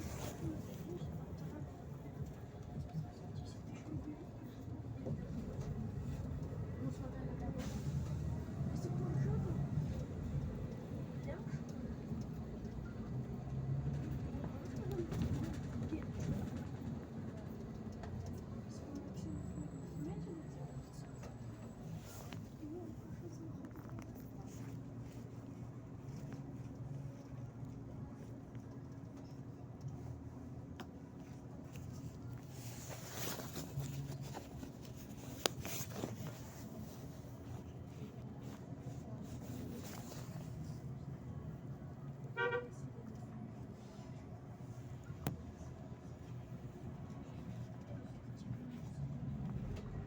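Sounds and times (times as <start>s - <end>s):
bus engine and road rumble: 0.0s - 50.0s.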